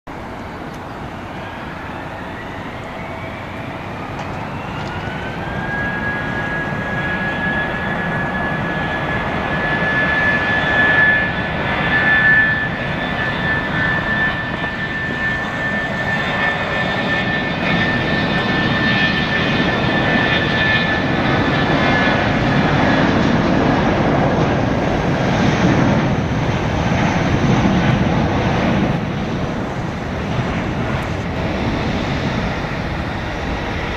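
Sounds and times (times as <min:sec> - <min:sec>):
jet engines spooling up: 0:00.1 - 0:33.9.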